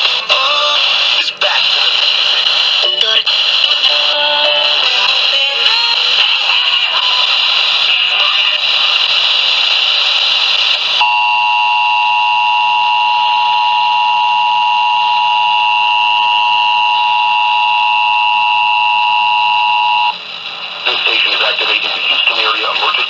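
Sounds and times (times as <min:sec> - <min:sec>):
harsh radio static: 0:00.0 - 0:11.1, 0:16.4 - 0:23.0
two-tone alarm: 0:11.0 - 0:20.2.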